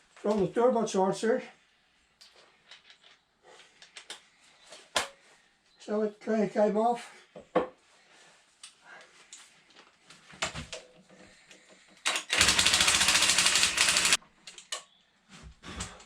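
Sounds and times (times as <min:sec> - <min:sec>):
power tool rattling: 0:12.0 - 0:14.2.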